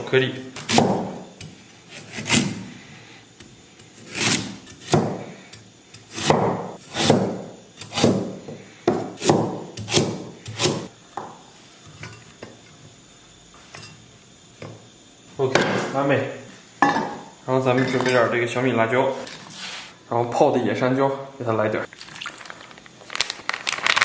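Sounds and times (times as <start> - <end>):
knife chopping on cutting board: 0.6 - 2.6, 4.0 - 5.3, 6.0 - 11.3.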